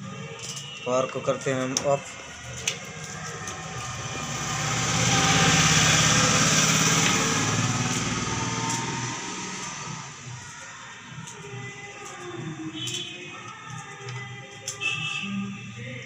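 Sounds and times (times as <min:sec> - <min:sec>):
small motor vehicle passing: 0:02.8 - 0:10.3.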